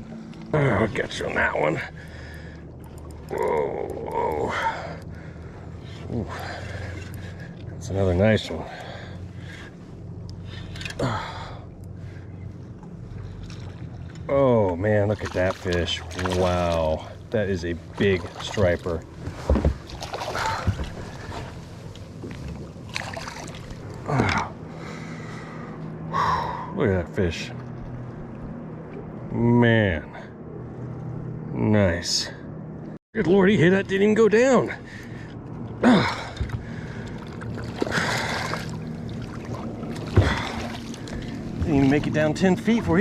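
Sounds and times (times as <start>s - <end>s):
boat engine hum: 0.0s - 43.0s
water: 0.0s - 43.0s
water against boat hull: 11.9s - 24.6s, 35.2s - 43.0s.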